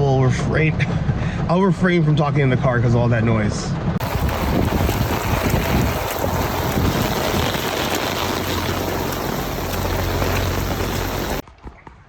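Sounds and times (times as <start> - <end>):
heavy rain hissing: 4.0 - 11.4
wind buffeting microphone: 4.0 - 11.4.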